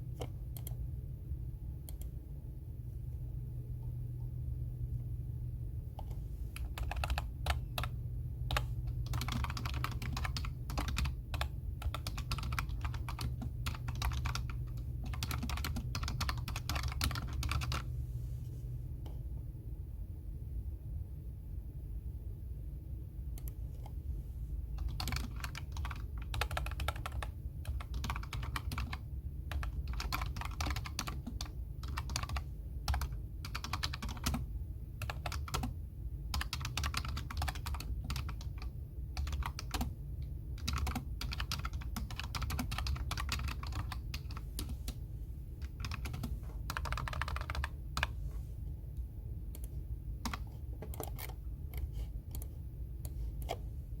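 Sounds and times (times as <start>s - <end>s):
low background hum: 0.0s - 54.0s
keyboard typing: 0.1s - 0.8s, 6.0s - 17.9s, 24.8s - 34.4s, 35.0s - 45.0s, 45.6s - 48.2s, 49.5s - 53.6s.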